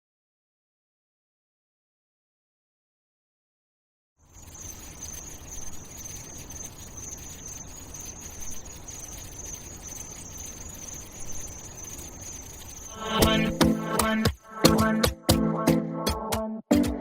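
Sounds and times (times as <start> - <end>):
high-pitched hiss or chirring: 4.2 - 15.0.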